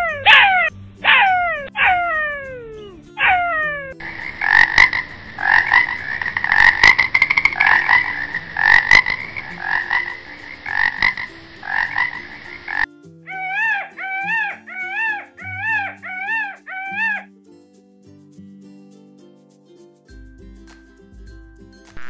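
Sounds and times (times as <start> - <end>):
frog croaking: 3.2 - 17.3.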